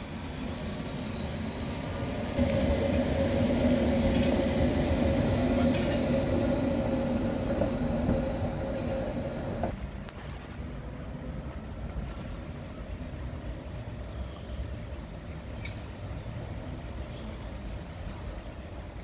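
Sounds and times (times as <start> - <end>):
tram hum: 0.0 - 10.1
tram rumbling on rails: 0.0 - 19.0.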